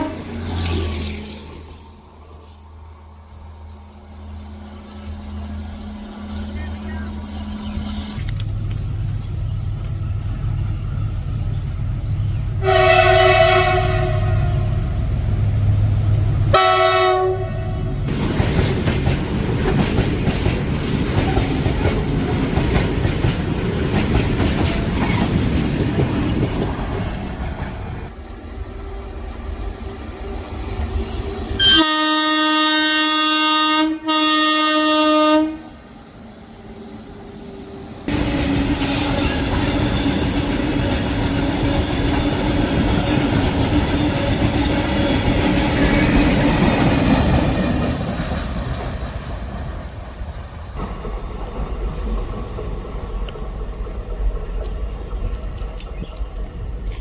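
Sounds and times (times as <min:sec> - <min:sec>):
train horn blasts: 0:00.0 - 0:00.5, 0:12.6 - 0:15.0, 0:16.5 - 0:18.0, 0:31.6 - 0:35.8
train wheels rumbling and clacking: 0:00.0 - 0:31.8, 0:36.0 - 0:57.0.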